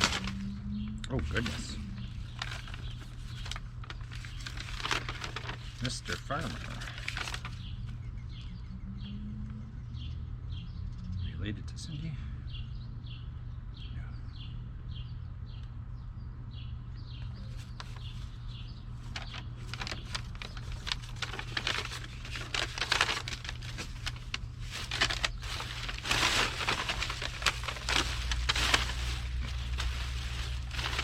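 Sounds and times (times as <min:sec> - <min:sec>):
paper and trash rustling: 0:00.0 - 0:07.8, 0:17.4 - 0:31.0
bird chirping: 0:00.0 - 0:31.0
steady low hum: 0:00.0 - 0:31.0.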